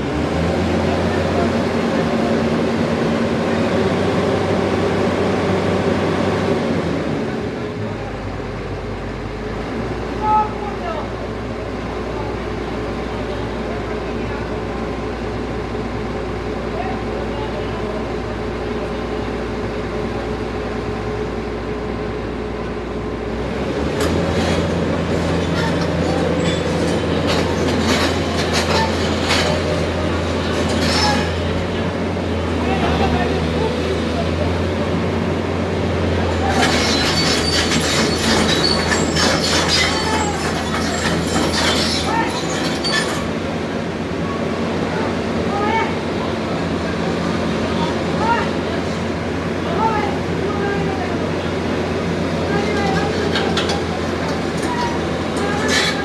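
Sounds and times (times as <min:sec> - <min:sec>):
excavator engine running: 0:00.0 - 0:56.0
high squeals: 0:24.1 - 0:31.7, 0:36.1 - 0:43.6, 0:52.0 - 0:56.0
metallic clattering: 0:24.1 - 0:31.7, 0:36.3 - 0:43.4.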